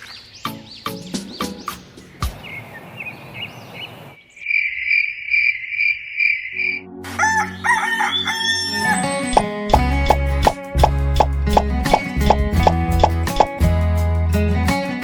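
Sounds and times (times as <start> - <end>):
rooster crowing: 7.2 - 9.1.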